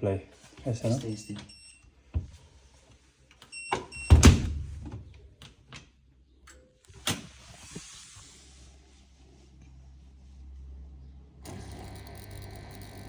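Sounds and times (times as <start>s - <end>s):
washing machine clunk: 3.8s - 5.1s.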